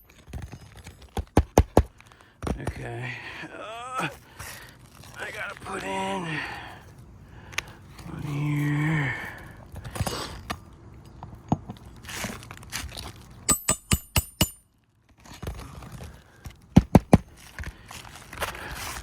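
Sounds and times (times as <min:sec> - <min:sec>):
hammer tapping on metal: 0:13.5 - 0:14.6.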